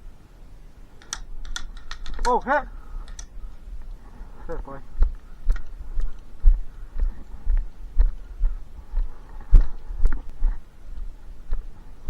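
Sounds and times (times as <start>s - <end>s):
gear clicking and rattling: 1.0s - 3.3s
footsteps as dull thuds: 3.3s - 12.0s.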